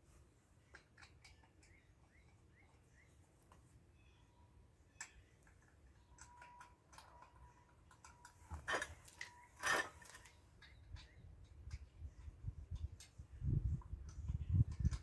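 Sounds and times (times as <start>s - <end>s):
lug nuts clinking: 5.5s - 11.9s
wheel clanking: 8.5s - 10.4s.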